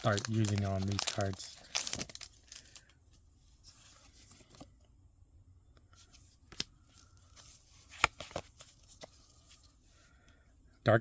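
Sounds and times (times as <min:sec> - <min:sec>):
cards and foil wrapper rustling: 0:00.0 - 0:04.7, 0:06.1 - 0:09.7.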